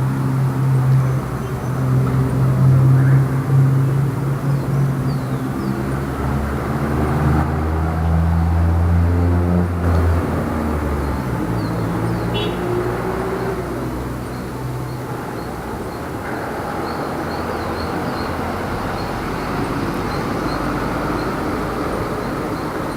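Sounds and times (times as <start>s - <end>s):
street traffic noise: 0.0s - 22.9s
vehicle engine humming: 0.0s - 22.9s.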